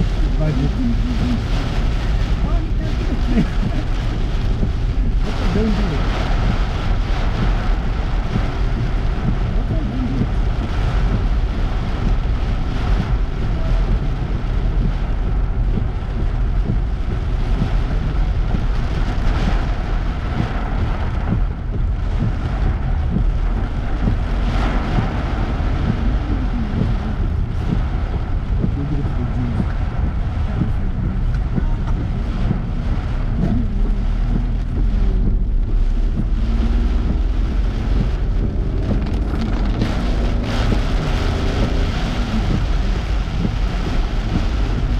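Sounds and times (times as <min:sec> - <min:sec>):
car engine rumble: 0:00.0 - 0:44.9.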